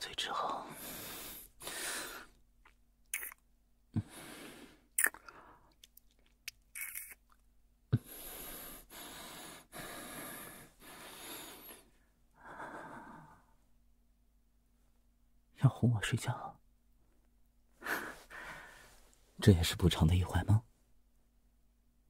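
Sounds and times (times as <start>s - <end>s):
soft breaths: 0.0s - 2.4s, 8.0s - 13.7s, 17.7s - 19.5s
wet lip smacks: 2.6s - 3.4s, 5.0s - 7.4s.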